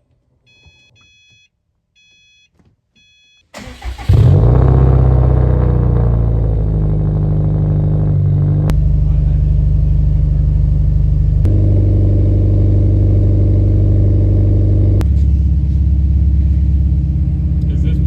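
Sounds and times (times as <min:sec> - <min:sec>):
car engine running: 0:03.6 - 0:18.0.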